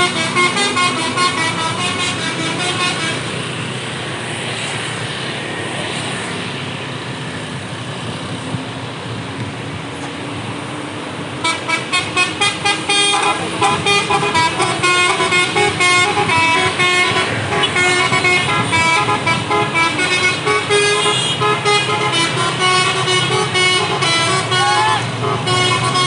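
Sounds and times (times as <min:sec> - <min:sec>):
multi-trumpet bus horn melody: 0:00.0 - 0:03.5, 0:11.4 - 0:26.0
bus engine: 0:00.0 - 0:26.0.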